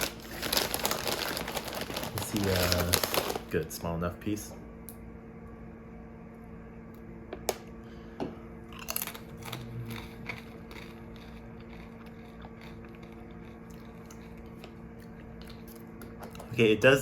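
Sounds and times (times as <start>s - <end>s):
chip crunching: 0.0s - 3.6s, 8.7s - 16.5s
quiet chewing: 8.8s - 16.5s.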